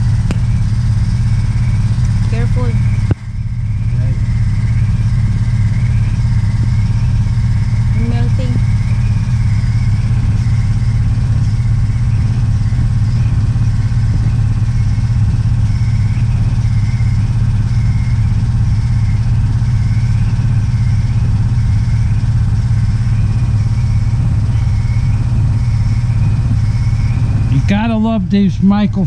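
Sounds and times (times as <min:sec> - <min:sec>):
blowtorch burning with low rumble: 0:00.0 - 0:29.0.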